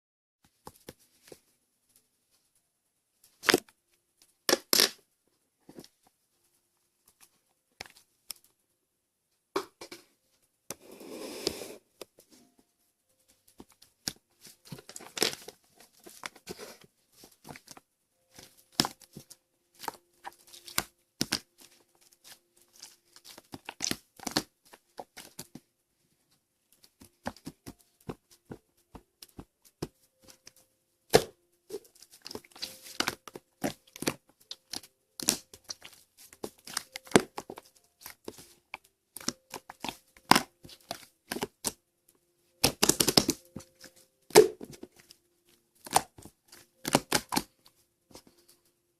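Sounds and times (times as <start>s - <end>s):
slime popping and crackling: 3.4s - 3.7s, 4.5s - 5.0s, 14.0s - 16.7s, 17.4s - 25.6s, 27.0s - 41.8s, 42.6s - 45.1s, 45.8s - 47.6s.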